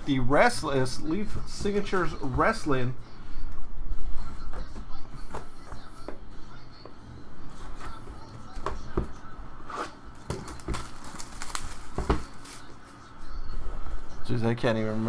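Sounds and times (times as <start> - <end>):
cardboard box handling: 9.7 - 12.7.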